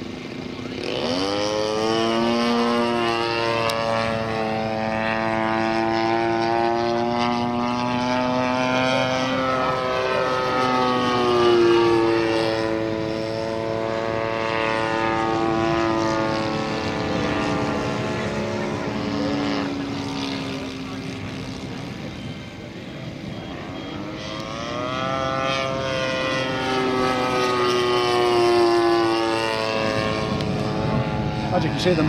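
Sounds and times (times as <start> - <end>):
model plane engine: 0.0 - 32.0.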